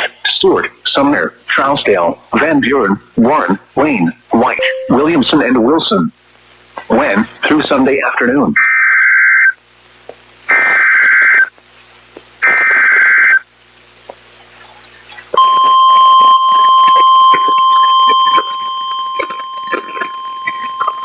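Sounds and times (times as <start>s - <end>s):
static crackling: 9.6s - 14.4s, 15.2s - 21.0s
steady alarm tone: 15.4s - 21.0s
two-tone digital data bursts: 15.4s - 21.0s.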